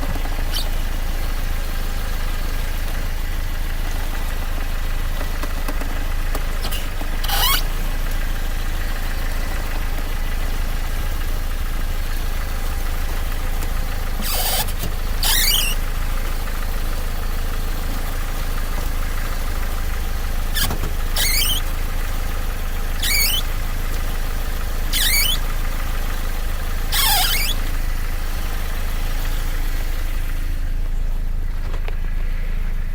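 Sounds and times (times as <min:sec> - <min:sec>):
car engine idling: 0:00.0 - 0:32.9
high squeals sliding down: 0:00.4 - 0:00.9, 0:07.2 - 0:07.8, 0:14.2 - 0:15.9, 0:20.5 - 0:21.8, 0:22.9 - 0:23.7, 0:24.8 - 0:25.6, 0:26.8 - 0:27.8.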